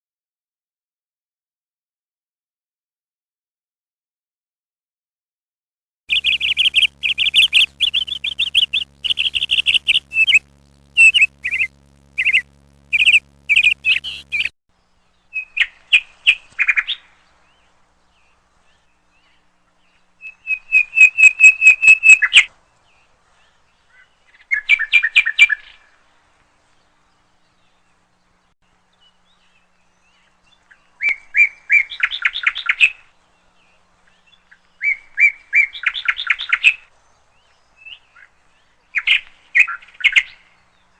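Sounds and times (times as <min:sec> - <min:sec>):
small bird chirping and trilling: 0:06.1 - 0:14.5.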